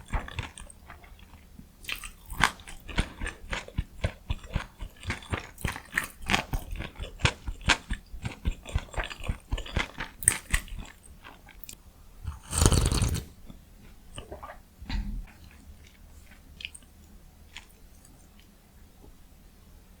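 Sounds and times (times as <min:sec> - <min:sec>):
crunchy chewing: 0:00.0 - 0:13.4
mouth clicks: 0:12.3 - 0:13.3.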